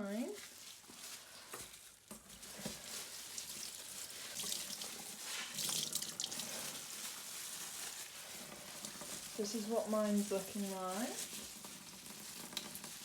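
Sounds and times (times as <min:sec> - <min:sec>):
tap water running into sink: 0:04.3 - 0:06.6, 0:11.6 - 0:13.0.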